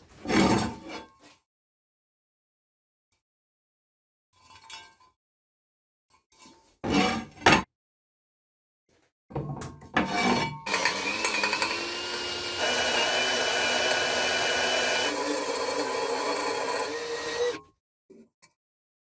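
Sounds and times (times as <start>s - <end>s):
power tool whining on metal: 10.7s - 17.6s.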